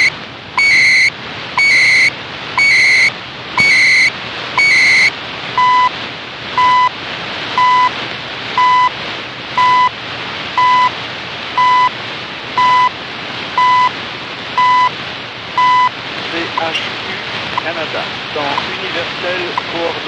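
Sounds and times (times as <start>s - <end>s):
time signal beeps: 0.0s - 5.9s, 6.6s - 6.9s, 7.6s - 7.9s, 8.6s - 8.9s, 9.6s - 9.9s, 10.6s - 11.0s, 11.6s - 11.9s, 12.6s - 12.9s, 13.6s - 13.9s, 14.6s - 15.0s, 15.6s - 15.9s
radio hiss: 0.0s - 20.0s.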